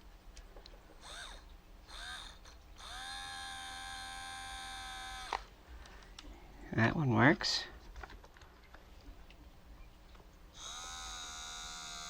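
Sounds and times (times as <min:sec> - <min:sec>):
motor whine: 0:01.0 - 0:05.5, 0:10.5 - 0:12.0
small motor whirring: 0:01.0 - 0:05.5, 0:10.5 - 0:12.0.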